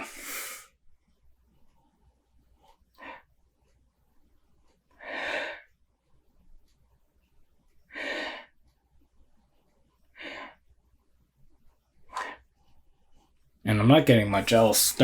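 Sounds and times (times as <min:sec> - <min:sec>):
man sniffing: 0:00.0 - 0:00.7.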